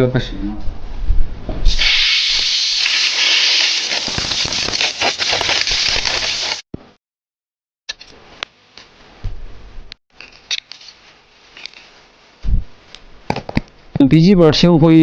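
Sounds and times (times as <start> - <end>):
compressed air hissing: 1.7 - 6.6.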